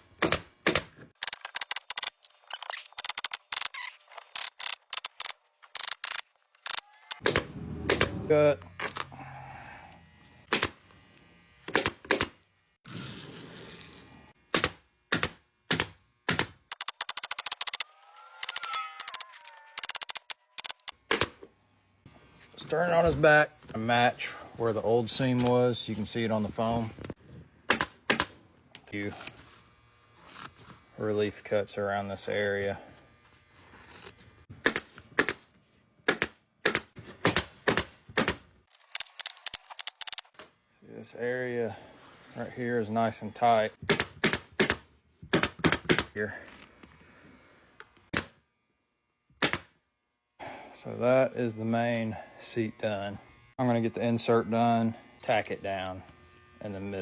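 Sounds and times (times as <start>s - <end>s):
staple gun firing: 7.2s - 8.2s, 43.9s - 46.1s, 49.4s - 49.7s.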